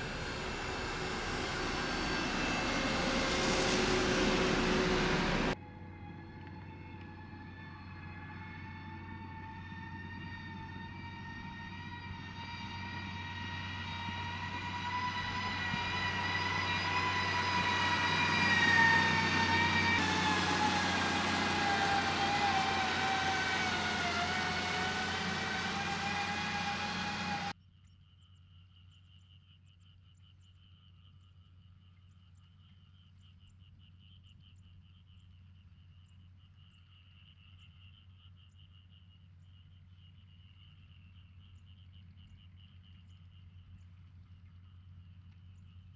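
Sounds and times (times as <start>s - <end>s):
passing truck whine: 0.0s - 27.6s.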